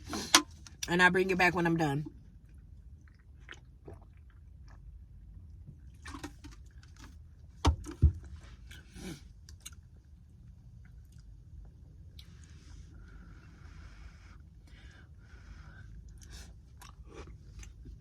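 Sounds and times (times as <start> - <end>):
person chewing: 16.0 - 18.0.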